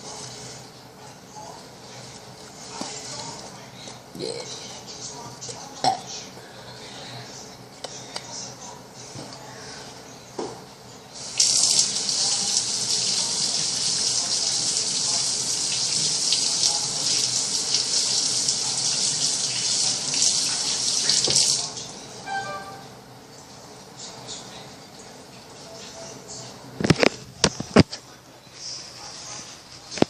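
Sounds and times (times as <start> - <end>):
tap water running into sink: 11.2 - 21.7.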